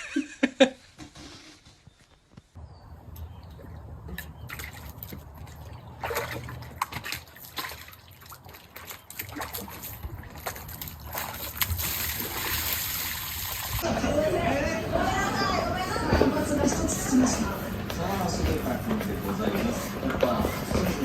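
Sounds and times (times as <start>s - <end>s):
water sloshing and splashing: 3.1s - 13.9s.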